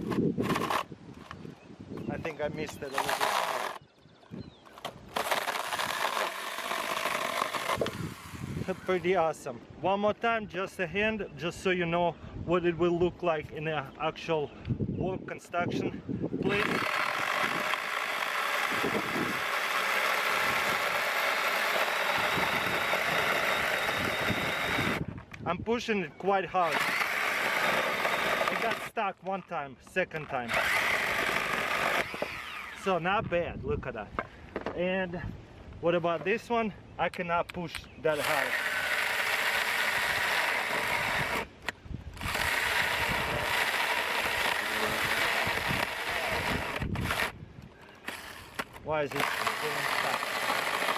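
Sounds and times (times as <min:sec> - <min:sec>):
chainsaw cutting wood: 0:00.0 - 0:01.4, 0:02.6 - 0:03.8, 0:04.7 - 0:09.2, 0:16.4 - 0:25.1, 0:26.6 - 0:29.0, 0:30.3 - 0:33.0, 0:38.1 - 0:47.4, 0:48.0 - 0:50.9.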